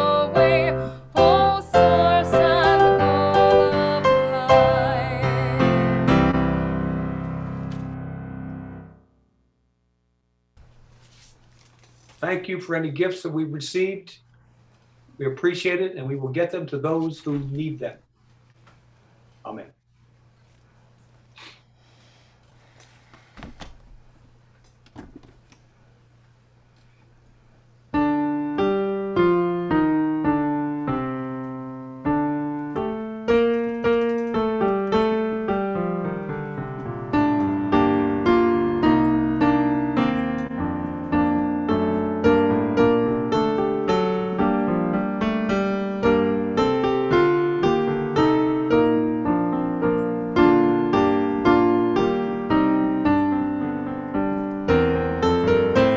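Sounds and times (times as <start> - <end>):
solo piano music: 0.0 - 9.2, 27.9 - 55.9.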